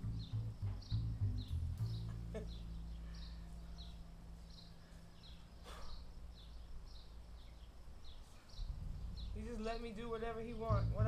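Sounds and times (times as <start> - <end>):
low steady tone: 0.0 - 8.0
bird chirping: 0.0 - 11.0.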